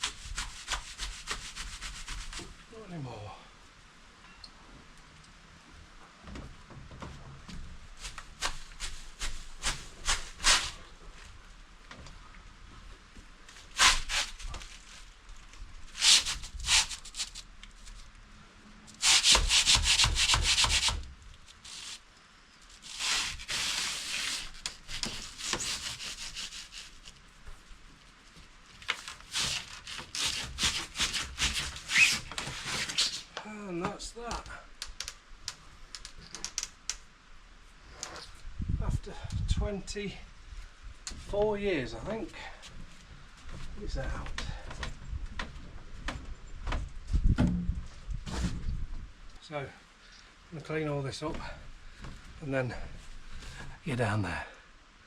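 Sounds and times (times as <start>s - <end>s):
wood scraping against wood: 22.6s - 27.3s, 28.8s - 33.4s.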